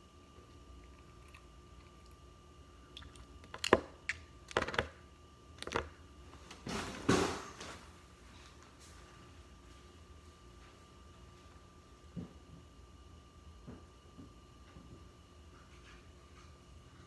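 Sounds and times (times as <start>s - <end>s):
small objects knocking and clicking: 4.5s - 5.0s.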